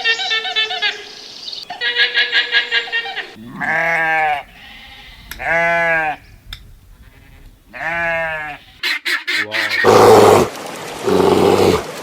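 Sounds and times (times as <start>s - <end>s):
livestock bleating: 3.4s - 6.2s, 7.2s - 8.8s
rapid pulsing call: 8.7s - 10.5s.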